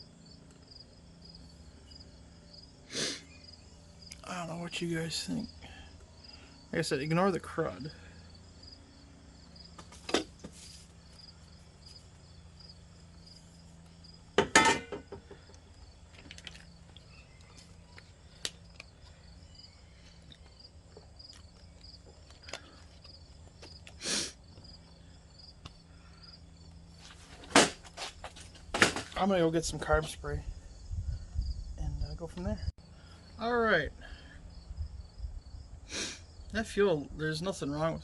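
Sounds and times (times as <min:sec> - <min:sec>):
crickets chirping: 0:00.0 - 0:38.0
clatter of things handled: 0:27.0 - 0:29.2.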